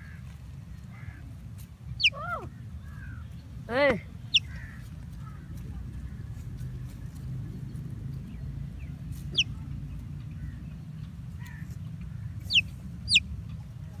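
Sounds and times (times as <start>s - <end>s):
baby chicks peeping: 2.0s - 2.2s, 4.3s - 5.0s, 5.6s - 13.7s.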